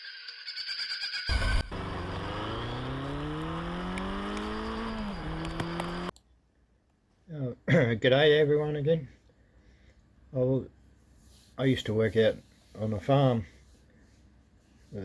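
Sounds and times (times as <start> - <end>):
loud thump: 1.3 - 4.2
engine accelerating: 1.3 - 6.1.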